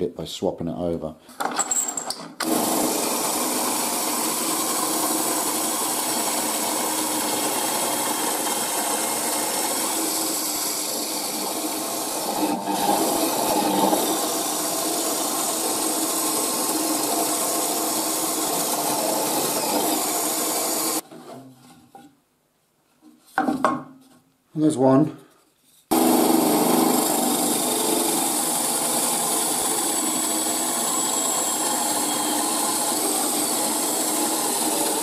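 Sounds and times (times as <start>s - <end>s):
bandsaw cutting wood: 2.4s - 21.0s, 25.9s - 35.0s.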